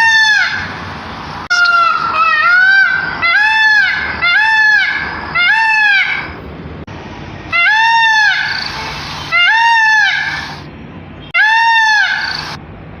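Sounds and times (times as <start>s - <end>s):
animal crying: 7.5s - 10.6s, 11.4s - 12.6s.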